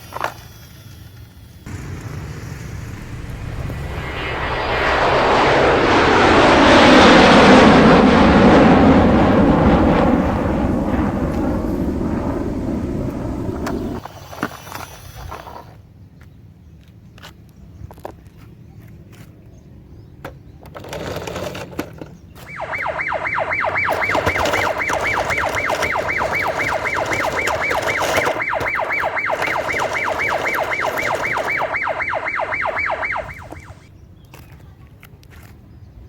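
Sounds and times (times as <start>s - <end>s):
toy siren yelping: 22.4s - 33.9s.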